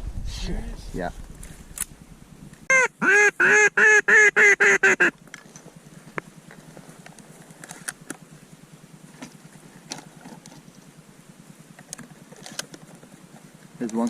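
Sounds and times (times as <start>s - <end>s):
faint low rumbling: 0.0s - 2.7s.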